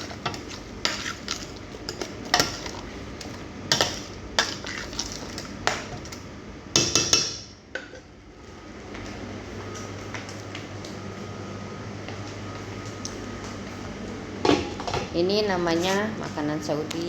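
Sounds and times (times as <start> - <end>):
spoon stirring and scraping pot: 0.0 - 6.2.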